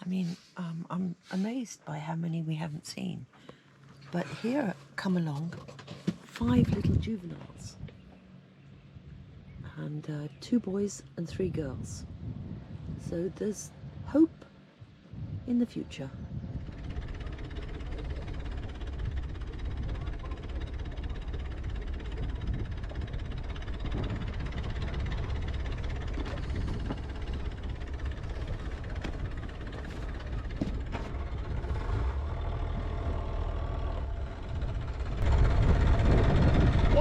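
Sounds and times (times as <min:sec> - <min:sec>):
boat engine idling: 0:16.2 - 0:37.0.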